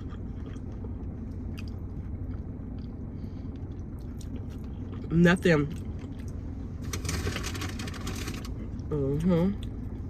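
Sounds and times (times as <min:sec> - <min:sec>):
person chewing food: 0:00.0 - 0:05.1
steady low hum: 0:00.0 - 0:10.0.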